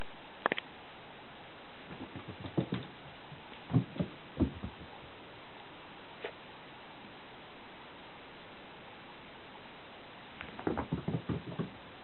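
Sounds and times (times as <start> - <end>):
paws and toy thumping on floor: 1.9 - 5.0, 10.4 - 11.8.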